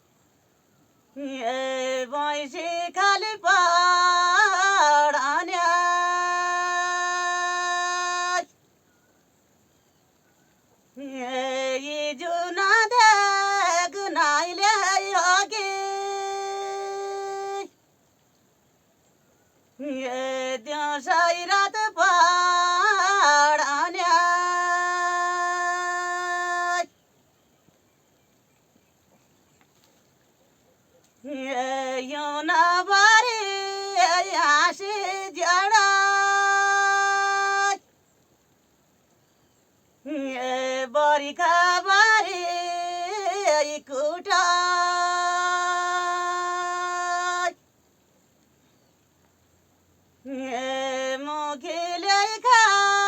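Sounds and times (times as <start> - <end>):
person singing unaccompanied: 1.1 - 8.6, 10.8 - 17.8, 19.7 - 27.0, 31.1 - 37.9, 39.9 - 47.7, 50.2 - 53.0.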